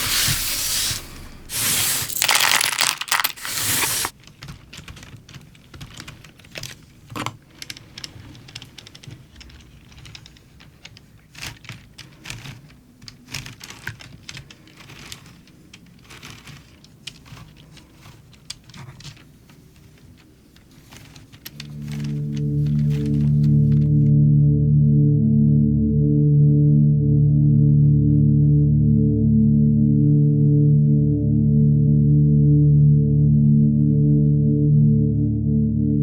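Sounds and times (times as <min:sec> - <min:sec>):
plastic pieces clicking together: 0:01.5 - 0:24.1.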